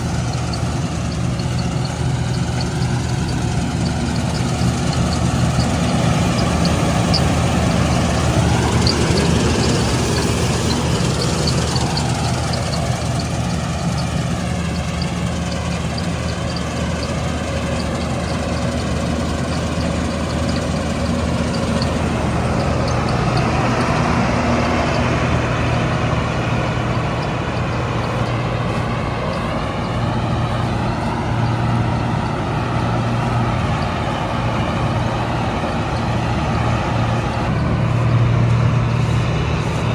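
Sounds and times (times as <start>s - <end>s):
diesel engine running: 0.0s - 39.9s
faint light ticking: 0.0s - 39.9s.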